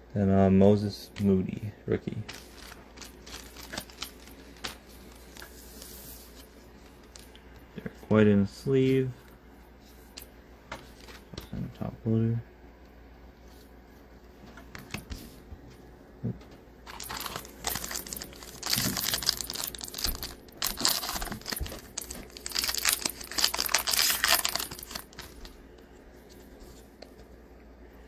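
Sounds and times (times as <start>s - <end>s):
card pack wrapper crinkling: 2.2s - 5.9s, 16.9s - 25.6s.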